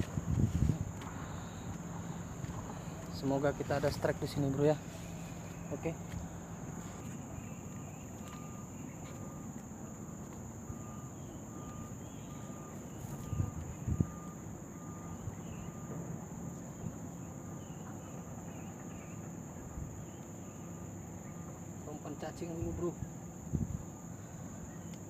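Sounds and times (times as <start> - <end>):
low engine rumble: 0.0 - 24.9
high insect drone: 0.0 - 25.0
short faint beeps: 7.7 - 9.5, 10.1 - 16.0.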